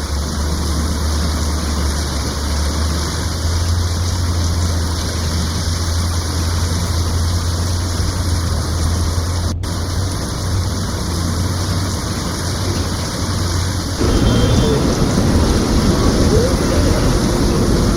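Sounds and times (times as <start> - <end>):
heavy rain falling: 0.0 - 17.9
low hum: 14.0 - 17.9.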